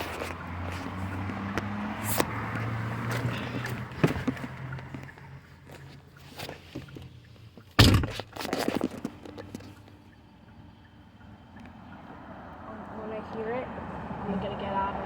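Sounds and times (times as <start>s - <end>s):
handling clicks and knocks: 0.0s - 10.0s
car door shutting: 7.7s - 9.0s.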